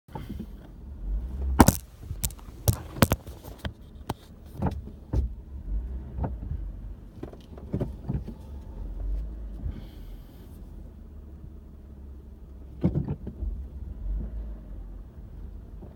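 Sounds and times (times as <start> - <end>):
car low steady rumble: 0.1 - 15.9
brake clicks and knocks: 1.4 - 8.7, 12.6 - 14.4.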